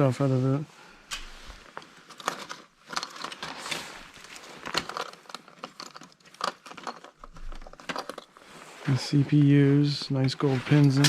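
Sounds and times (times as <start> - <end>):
small parts clicking and clattering: 1.1 - 8.5.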